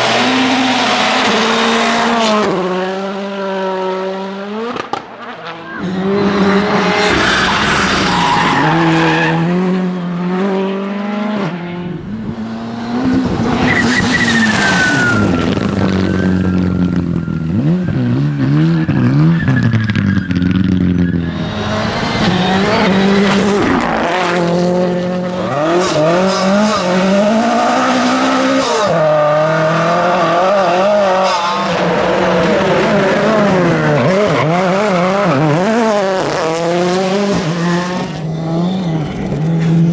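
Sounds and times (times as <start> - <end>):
rally car engines revving: 0.0 - 39.9
tires skidding and squealing: 5.5 - 9.8, 13.3 - 24.4, 25.4 - 39.8.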